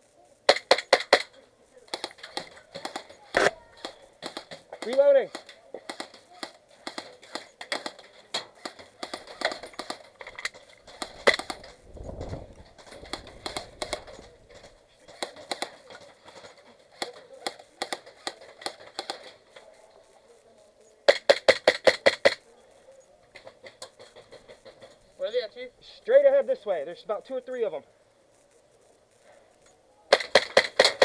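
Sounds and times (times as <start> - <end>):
airsoft guns firing: 0.4 - 19.6, 21.0 - 22.4, 30.1 - 31.0.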